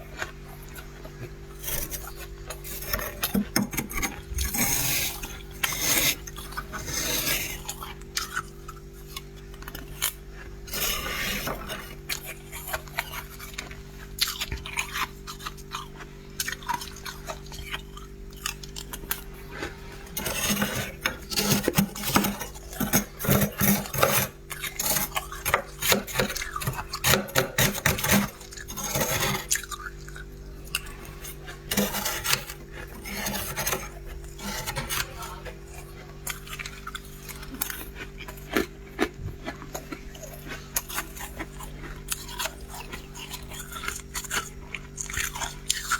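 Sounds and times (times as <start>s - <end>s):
freezer frost being scraped: 0.0s - 15.8s, 16.4s - 45.9s
steady low hum: 0.0s - 45.9s.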